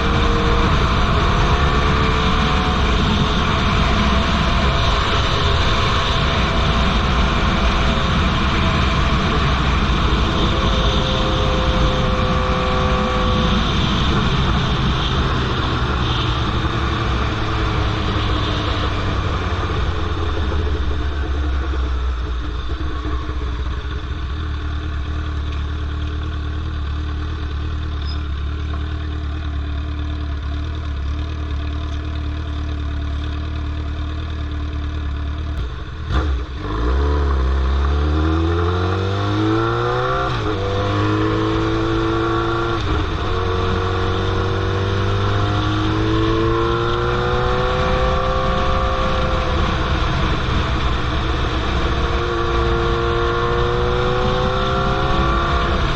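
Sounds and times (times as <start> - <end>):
motorcycle engine running: 0.0 - 55.9.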